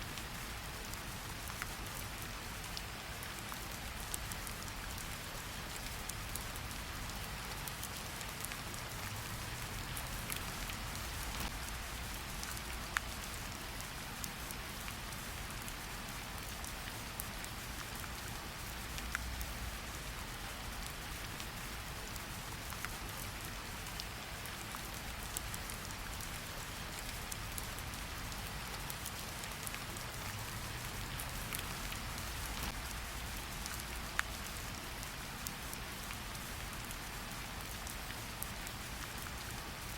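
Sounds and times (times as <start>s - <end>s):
steady rain hiss: 0.0s - 39.9s.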